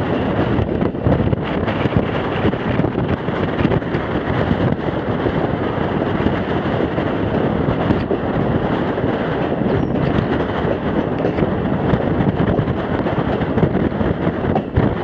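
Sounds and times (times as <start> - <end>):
train car rolling on track: 0.0 - 15.0
wind buffeting microphone: 0.0 - 15.0.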